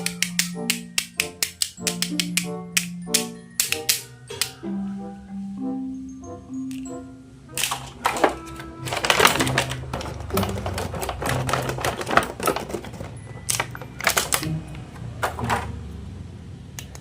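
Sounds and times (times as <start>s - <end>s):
toy figures and packaging rattling: 7.6s - 15.8s.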